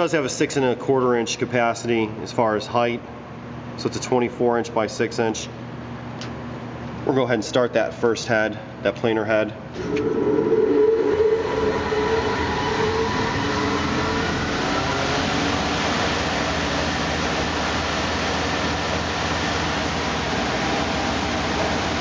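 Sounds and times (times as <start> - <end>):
planer motor whine: 9.8 - 22.0.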